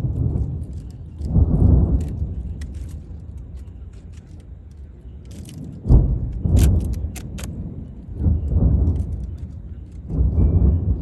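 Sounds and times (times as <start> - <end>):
fireworks crackling pops: 5.3 - 7.7
fireworks booming: 5.8 - 9.2.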